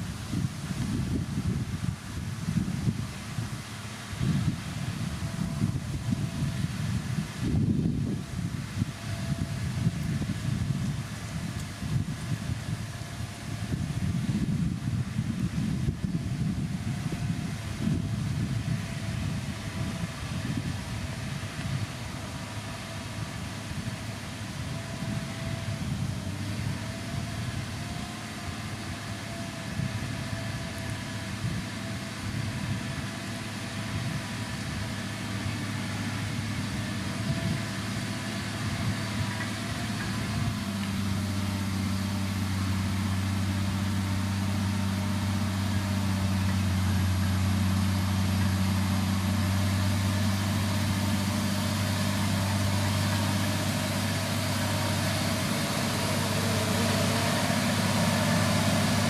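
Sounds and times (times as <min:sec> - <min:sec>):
heavy machinery diesel engines: 0:00.0 - 0:59.0
strong low hum: 0:00.0 - 0:59.0.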